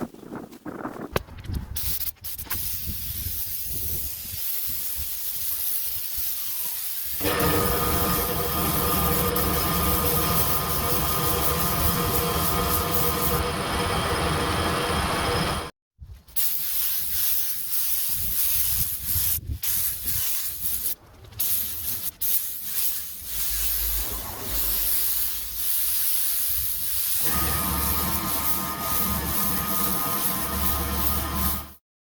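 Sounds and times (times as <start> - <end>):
paint spray gun hissing: 1.8 - 13.4, 16.4 - 31.8
humming with low drone: 7.2 - 15.7, 27.2 - 31.8.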